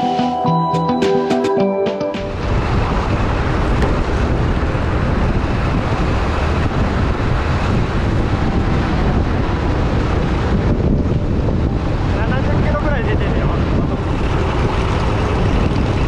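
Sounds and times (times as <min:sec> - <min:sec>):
wind rushing over microphone: 0:02.2 - 0:16.0
motorcycle engine: 0:13.6 - 0:16.0.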